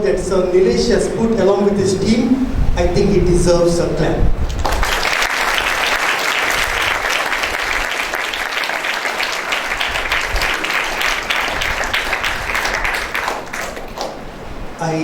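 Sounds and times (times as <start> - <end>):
audience clapping: 4.4 - 14.3.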